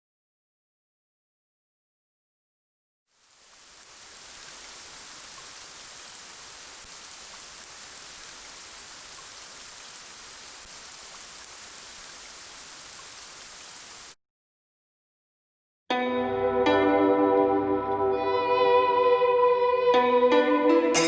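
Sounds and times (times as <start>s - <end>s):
steady rain-like hiss: 3.1s - 14.2s.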